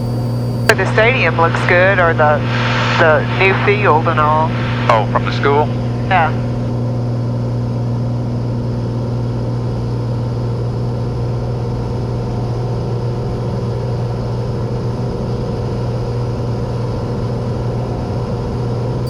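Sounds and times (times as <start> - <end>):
propeller aircraft engine droning: 0.0 - 12.8.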